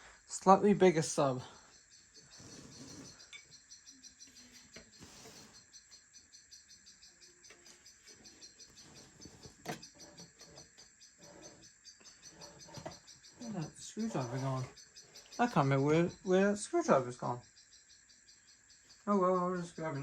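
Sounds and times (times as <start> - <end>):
crickets chirping: 0.0 - 20.0.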